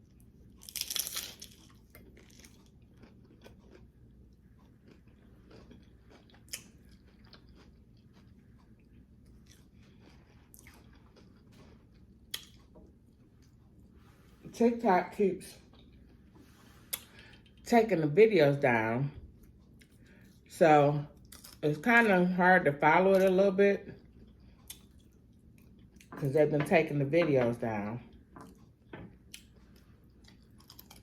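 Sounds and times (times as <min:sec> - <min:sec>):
close-up chewing: 0:00.1 - 0:14.0, 0:19.4 - 0:20.5, 0:28.1 - 0:31.0
crunchy bite into taco shell: 0:00.6 - 0:03.8.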